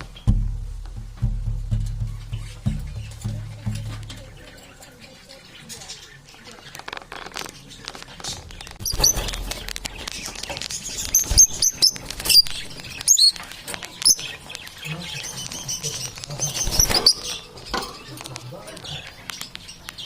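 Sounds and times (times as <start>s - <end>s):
small birds chirping: 0.0s - 20.0s
scratching and rustling clicks: 5.7s - 20.0s.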